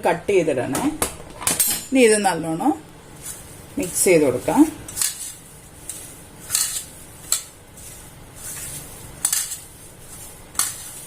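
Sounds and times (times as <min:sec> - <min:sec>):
spoon scraping a bowl: 0:04.9 - 0:11.0.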